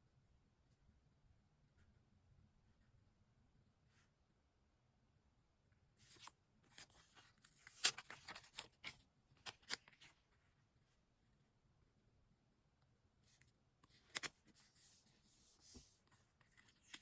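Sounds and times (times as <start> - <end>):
paper crackling and tearing: 6.1 - 10.1.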